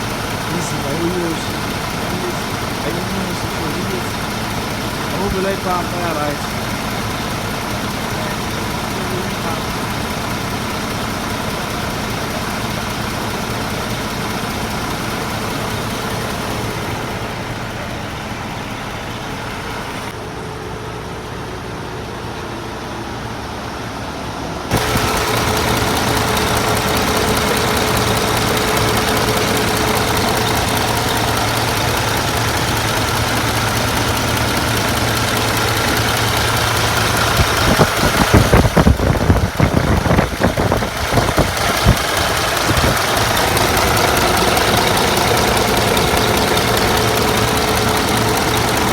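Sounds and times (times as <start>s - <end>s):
diesel truck engine idling: 0.0s - 48.9s.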